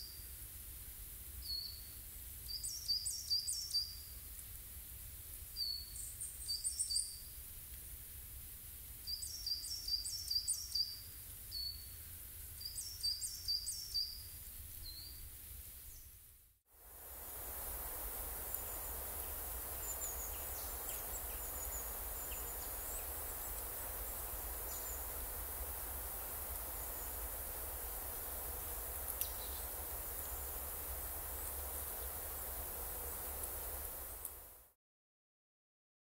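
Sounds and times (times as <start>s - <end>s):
forest hiss: 0.0s - 34.8s
songbird calling: 2.5s - 4.0s, 9.1s - 11.9s, 12.6s - 14.2s, 18.4s - 34.2s
faint high chirps: 17.3s - 34.4s.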